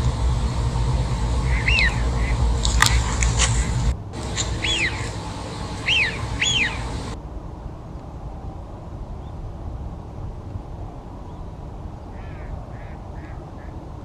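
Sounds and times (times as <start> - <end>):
duck whistled call: 0.0 - 7.2
low background rumble: 0.0 - 13.5.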